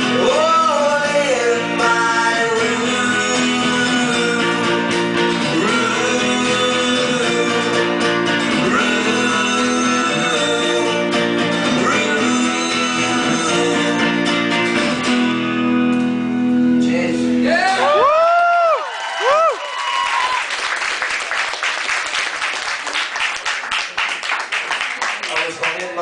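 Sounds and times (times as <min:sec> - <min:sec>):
live rock band playing: 0:00.0 - 0:18.0
strummed guitars: 0:00.0 - 0:18.0.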